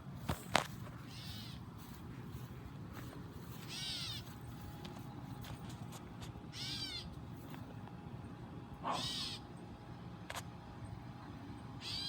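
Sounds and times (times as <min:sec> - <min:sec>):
baby bird calling: 0:01.1 - 0:01.6, 0:03.6 - 0:04.3, 0:06.5 - 0:07.1, 0:08.9 - 0:09.5, 0:11.8 - 0:12.0.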